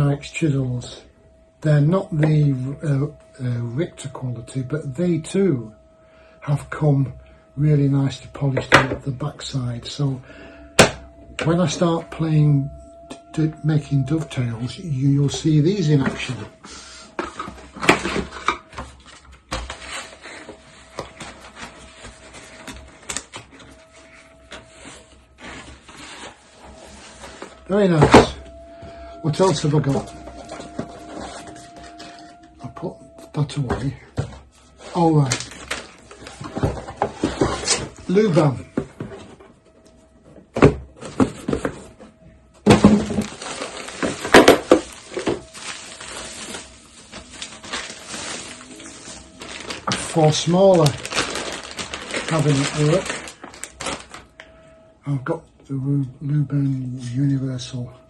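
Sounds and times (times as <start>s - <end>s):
faint steady hum: 0.0s - 58.0s
packaging rustling and scraping: 10.6s - 54.4s.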